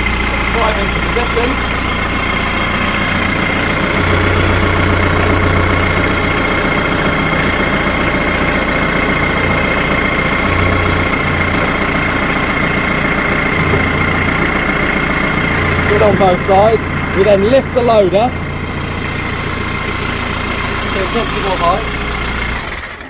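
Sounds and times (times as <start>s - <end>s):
tractor diesel engine running: 0.0s - 23.0s.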